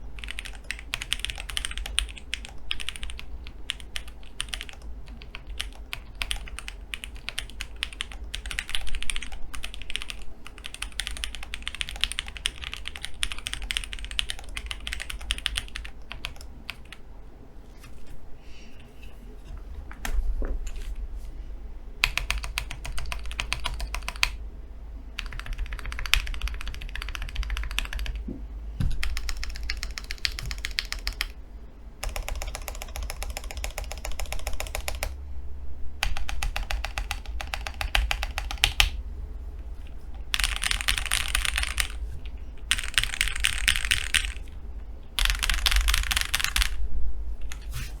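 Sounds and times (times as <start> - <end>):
rapid keyboard key clacks: 0.0 - 17.0, 22.0 - 24.4, 25.2 - 31.4, 32.0 - 35.2, 36.0 - 39.0, 40.2 - 46.8
low steady hum: 0.0 - 48.0.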